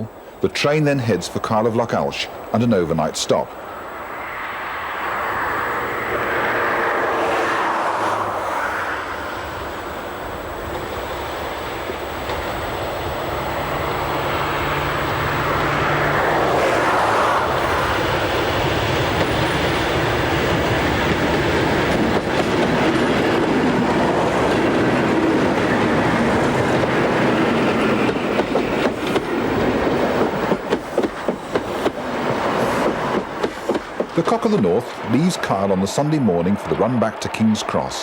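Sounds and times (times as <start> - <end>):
diesel locomotives passing: 0.0 - 38.0
train wheels clacking on rail joints: 18.0 - 37.3.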